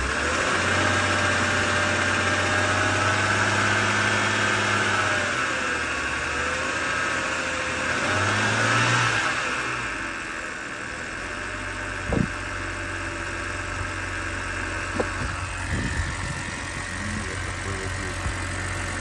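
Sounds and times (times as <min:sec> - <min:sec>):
car engine idling: 0:00.0 - 0:08.4, 0:09.2 - 0:19.0
engine knocks: 0:14.8 - 0:19.0.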